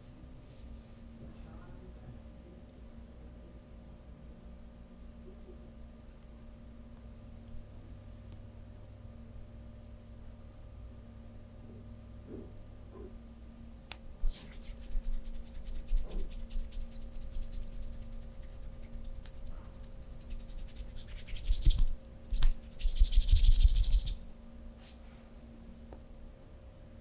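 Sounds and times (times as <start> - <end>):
hands scratching and rubbing skin: 14.3 - 24.2.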